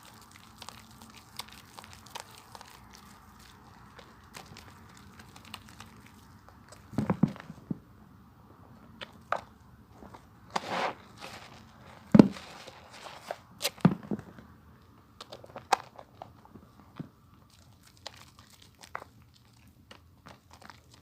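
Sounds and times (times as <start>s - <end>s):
hands lathering soap: 0.0s - 6.9s.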